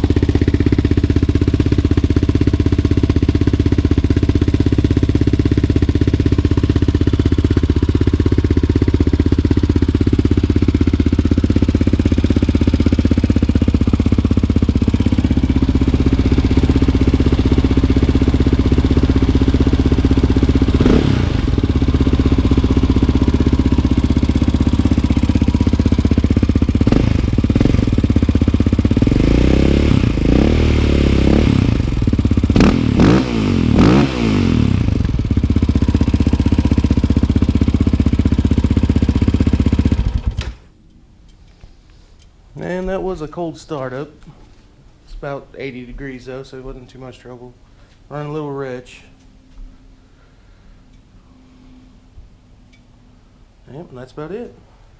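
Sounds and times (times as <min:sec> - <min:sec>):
quad engine idling and revving: 0:00.0 - 0:40.5
person speaking: 0:42.5 - 0:49.2, 0:53.6 - 0:54.6.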